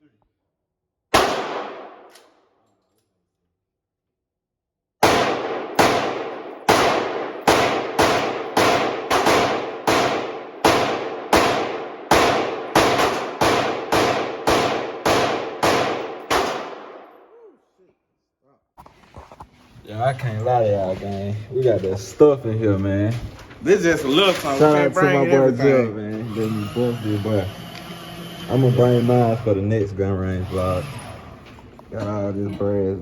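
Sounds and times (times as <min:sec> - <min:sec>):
gunshots with ringing echo: 0:01.1 - 0:02.2, 0:05.0 - 0:17.3.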